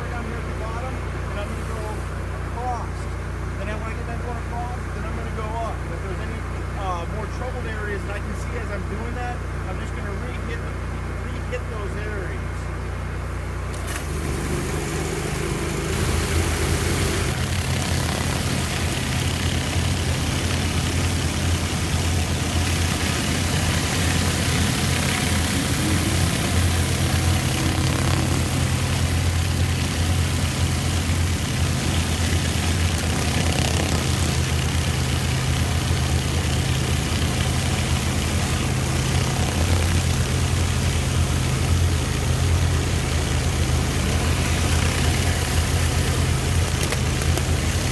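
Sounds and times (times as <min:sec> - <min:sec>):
pressure washer engine running: 0:00.0 - 0:47.9
high-pressure water spraying: 0:13.7 - 0:47.9.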